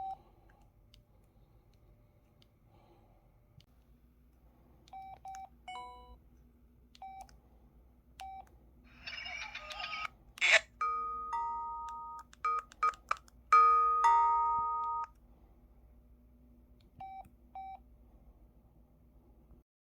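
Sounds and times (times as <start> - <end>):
phone keypress beeps: 4.9 - 6.2, 7.0 - 7.3, 8.2 - 8.5, 11.4 - 13.3, 17.0 - 17.8.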